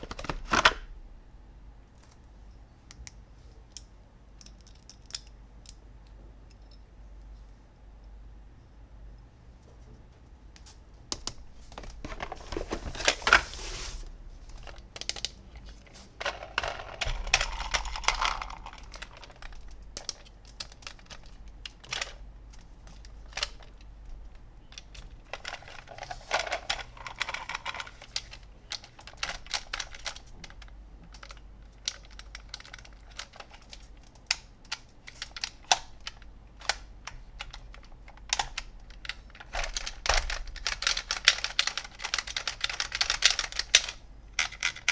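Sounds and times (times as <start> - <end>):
plastic toys clicking and tapping: 2.9 - 5.8, 16.2 - 23.8, 24.6 - 44.9
packaging rustling: 11.7 - 14.8.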